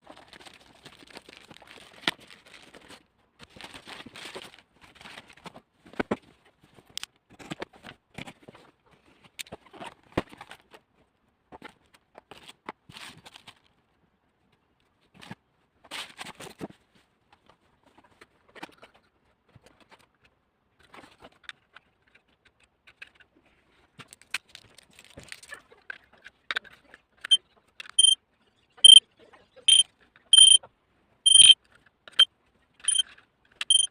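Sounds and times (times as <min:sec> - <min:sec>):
packaging rustling: 0:00.1 - 0:03.0
carbon monoxide alarm beeping: 0:30.4 - 0:30.6, 0:31.3 - 0:31.6.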